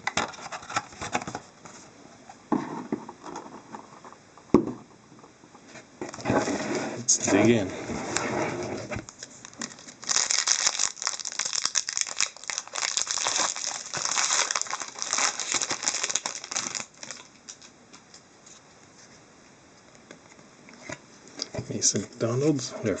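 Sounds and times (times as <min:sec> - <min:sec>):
plastic wrapping crinkling and tearing: 0:09.0 - 0:17.7.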